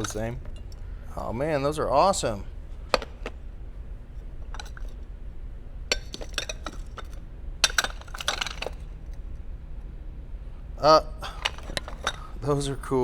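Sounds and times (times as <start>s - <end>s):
small hard objects clinking: 0.0s - 3.6s, 4.3s - 5.1s, 5.9s - 9.2s, 10.8s - 13.0s.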